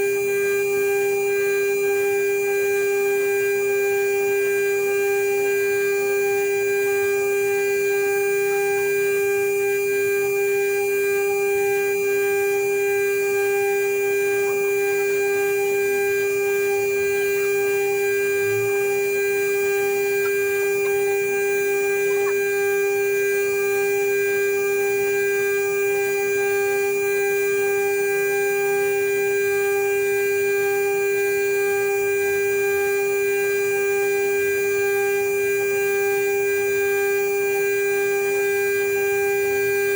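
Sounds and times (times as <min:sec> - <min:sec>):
router spindle whine: 0:00.0 - 0:39.9.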